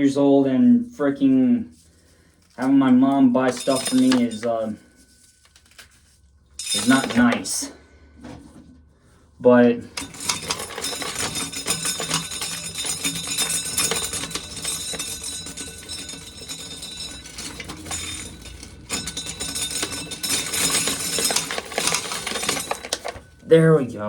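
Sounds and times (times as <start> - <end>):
corn sheller clattering: 3.4 - 4.7, 6.6 - 7.6, 9.9 - 23.5.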